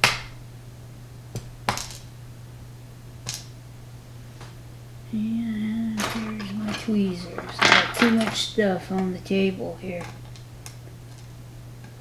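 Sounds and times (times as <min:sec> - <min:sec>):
low electrical hum: 0:00.0 - 0:12.0
small metal parts clicking: 0:06.0 - 0:08.6.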